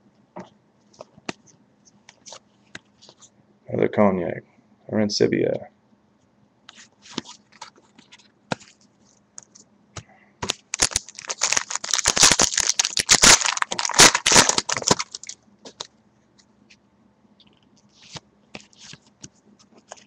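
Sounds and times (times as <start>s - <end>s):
foil wrapper crinkling: 10.4s - 15.9s.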